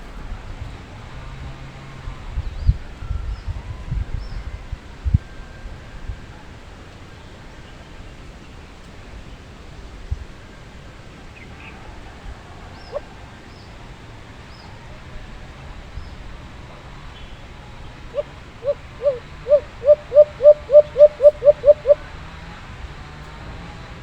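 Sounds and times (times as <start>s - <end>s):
dove hooting coos: 12.8s - 13.2s, 17.7s - 22.2s
faint high bird chirps: 18.1s - 22.0s.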